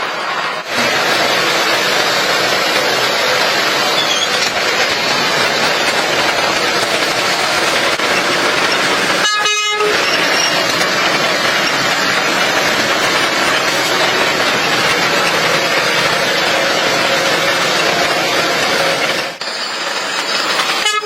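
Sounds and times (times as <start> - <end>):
vehicle running: 0.0 - 9.2.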